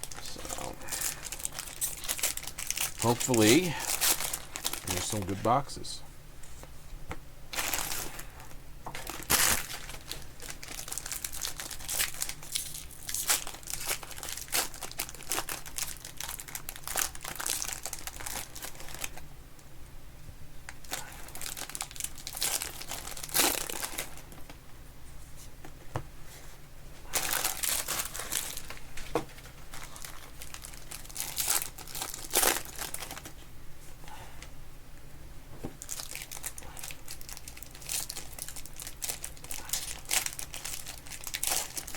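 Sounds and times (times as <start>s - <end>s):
plastic wrapping crinkling and tearing: 0.0s - 5.4s, 7.5s - 19.2s, 20.7s - 24.4s, 27.1s - 33.4s, 35.8s - 41.9s.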